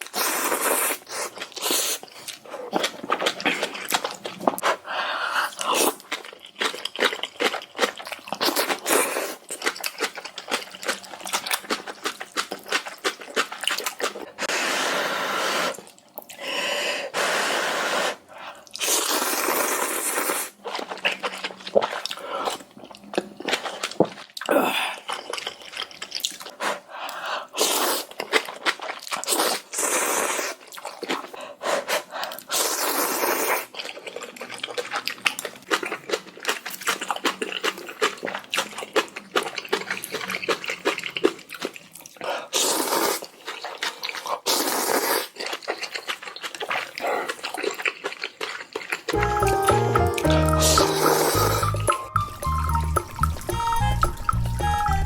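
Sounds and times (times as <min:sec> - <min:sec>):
slurping noodles: 0:00.0 - 0:06.2, 0:13.6 - 0:22.7, 0:27.4 - 0:49.2, 0:50.6 - 0:51.9
wet chewing: 0:00.1 - 0:14.5, 0:18.6 - 0:55.0.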